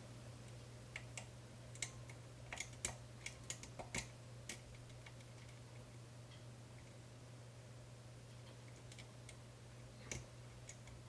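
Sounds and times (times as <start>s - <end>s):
lock pick metallic clicks: 0.9s - 5.6s.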